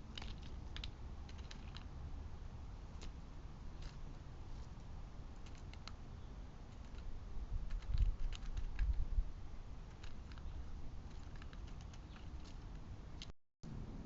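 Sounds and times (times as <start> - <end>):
animal clicking and tapping: 0.0 - 1.9, 5.4 - 6.0, 6.7 - 7.1, 7.7 - 9.0, 9.9 - 13.3.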